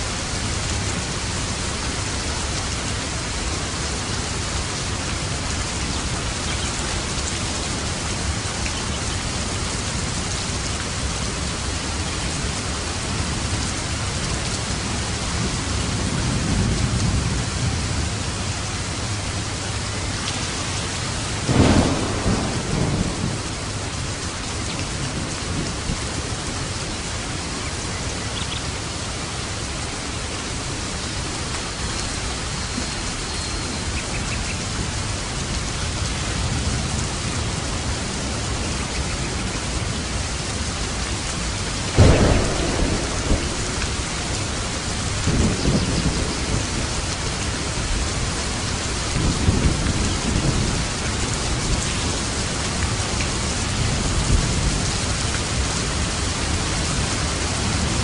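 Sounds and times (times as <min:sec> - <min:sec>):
heavy rain falling: 0:00.0 - 0:58.0
thunder rumbling: 0:21.3 - 0:26.5, 0:40.6 - 0:51.8
sharp thunderclap: 0:21.4 - 0:24.0, 0:42.0 - 0:46.9.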